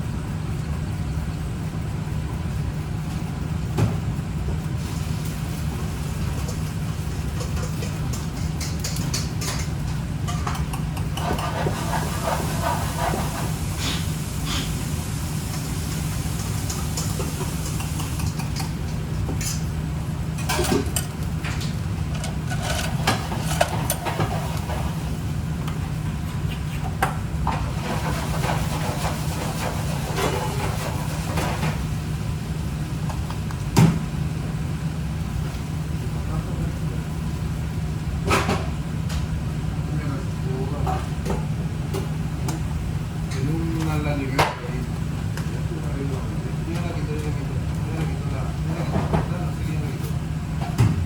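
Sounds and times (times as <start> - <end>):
steady low hum: 0.0 - 51.0
utensil stirring in a pan: 5.7 - 18.9.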